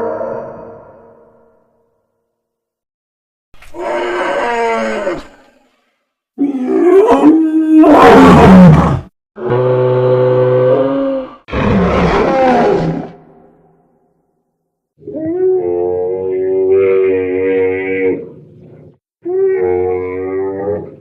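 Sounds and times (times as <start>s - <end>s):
large animal roaring: 6.4s - 13.4s, 15.0s - 21.0s.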